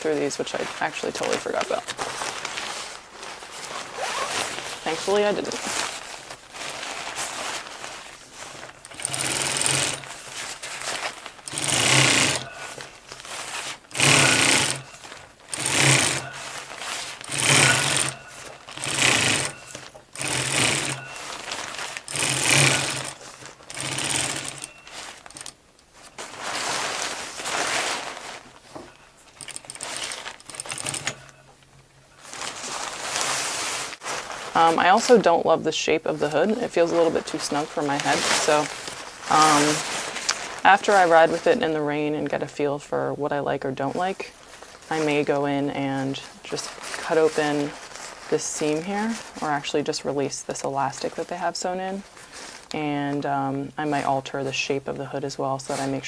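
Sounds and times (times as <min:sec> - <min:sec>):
electric sewing machine stitching: 0:08.8 - 0:10.2, 0:11.4 - 0:12.8, 0:13.8 - 0:25.6, 0:29.4 - 0:31.2.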